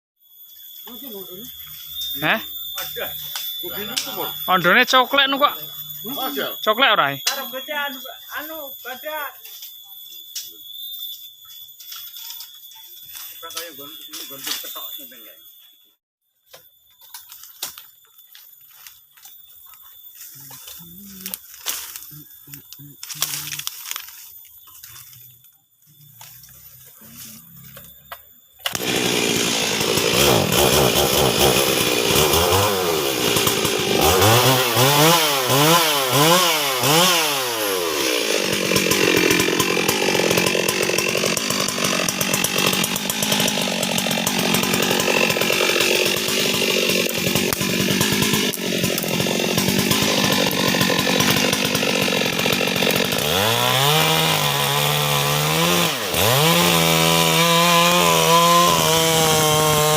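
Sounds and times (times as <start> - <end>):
chainsaw cutting tree trunk: 27.2 - 59.9
chainsaw starting and revving: 28.6 - 59.9.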